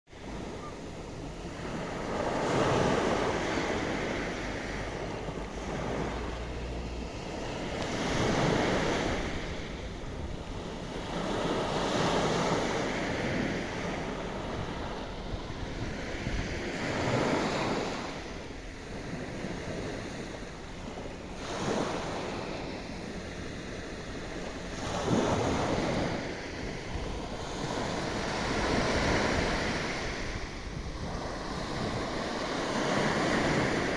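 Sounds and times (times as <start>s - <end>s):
sea waves breaking on shore: 0.1s - 33.9s.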